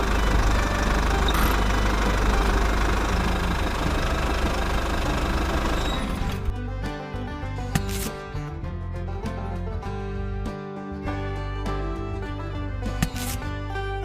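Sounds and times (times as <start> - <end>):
small motor humming and knocking: 0.0 - 6.6.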